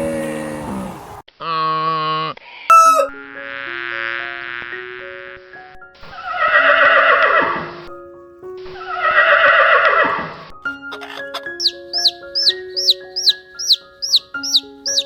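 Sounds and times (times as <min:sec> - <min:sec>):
background music with held notes: 0:02.7 - 0:15.0
horse whinnying: 0:06.2 - 0:07.7, 0:08.8 - 0:10.3.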